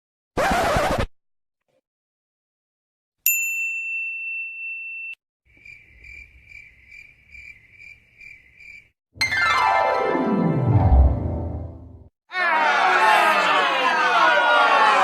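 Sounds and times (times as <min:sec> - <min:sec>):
crickets chirping: 0:05.5 - 0:08.9.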